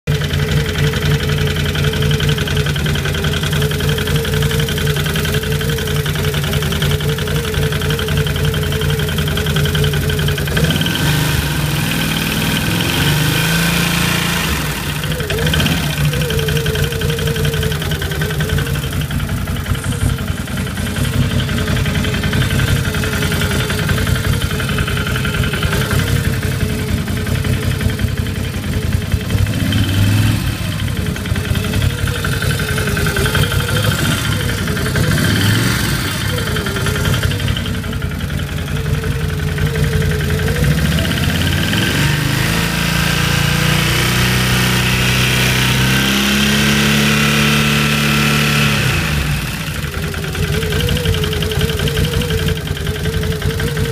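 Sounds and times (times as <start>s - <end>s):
atv engine idling: 0.0s - 53.9s
engine knocking: 0.0s - 53.9s.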